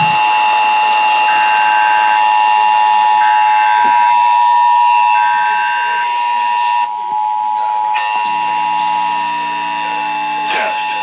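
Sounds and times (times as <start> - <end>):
two-tone alert signal: 0.0 - 0.5.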